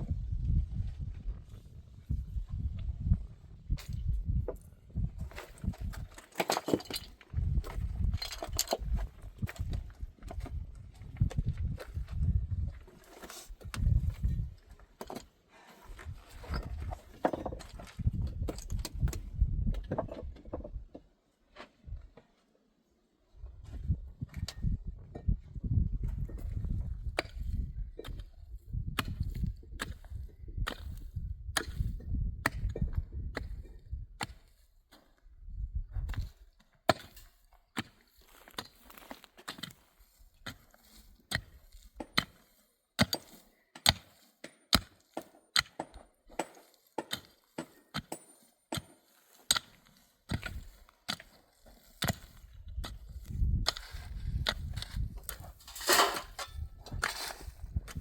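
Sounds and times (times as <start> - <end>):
wood being chopped: 43.8 - 48.9.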